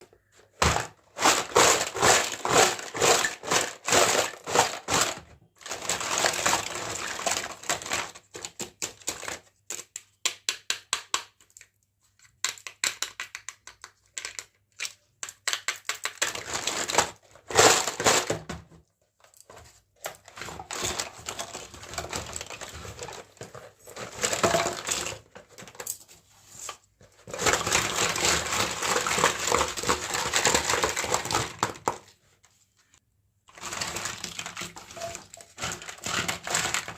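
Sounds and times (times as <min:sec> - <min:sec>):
plastic packaging crinkling: 0:00.6 - 0:08.3, 0:33.5 - 0:36.9
plastic toy pieces clicking: 0:12.4 - 0:17.0, 0:33.6 - 0:36.9.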